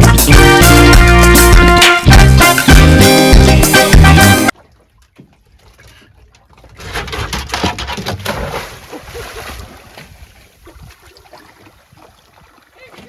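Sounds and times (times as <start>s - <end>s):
water splashing along hulls: 4.0s - 13.0s.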